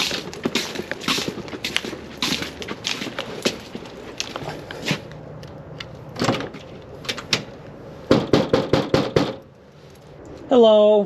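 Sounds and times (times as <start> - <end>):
footsteps on icy ground: 0.0 - 6.0
knocking on a door: 8.1 - 9.4.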